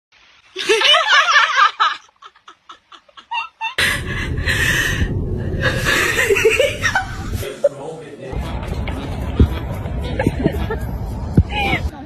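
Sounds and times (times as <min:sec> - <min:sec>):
person laughing: 0:00.6 - 0:04.9, 0:05.5 - 0:07.7, 0:09.0 - 0:10.9
loud noise with deep rumble: 0:03.8 - 0:07.5, 0:08.3 - 0:12.0.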